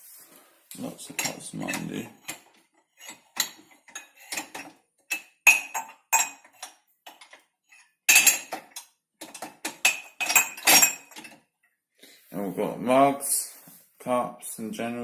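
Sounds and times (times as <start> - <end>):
crockery clinking and clattering: 1.0 - 11.5.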